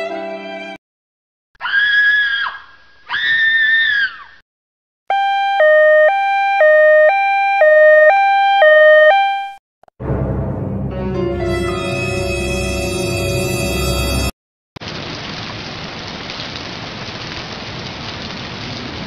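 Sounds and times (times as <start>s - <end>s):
electronic hi-lo alarm tone: 5.1s - 9.6s, 11.5s - 14.3s
high-pitched wails: 5.1s - 9.6s, 11.3s - 14.3s
violin tune: 10.2s - 14.3s.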